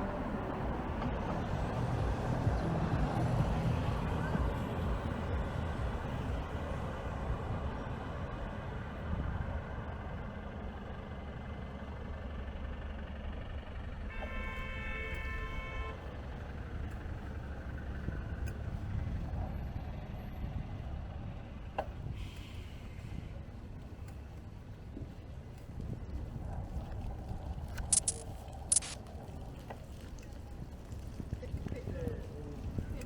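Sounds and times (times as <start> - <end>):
road noise: 0.0 - 33.0
car horn: 14.0 - 16.0.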